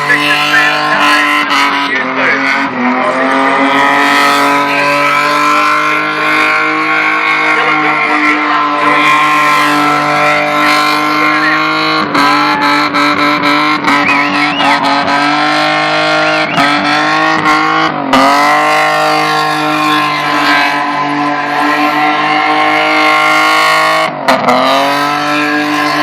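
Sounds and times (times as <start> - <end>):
car engine revving high: 0.0 - 26.0.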